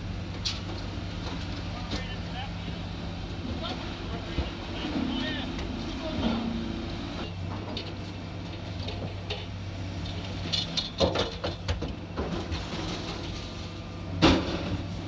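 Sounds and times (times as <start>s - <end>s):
engine idling: 0.0s - 15.0s
scrap metal clanking: 10.1s - 15.0s.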